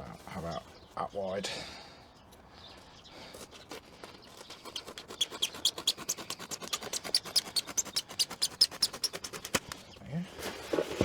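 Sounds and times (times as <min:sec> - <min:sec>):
scratchy cutting clicks: 0:04.4 - 0:09.8.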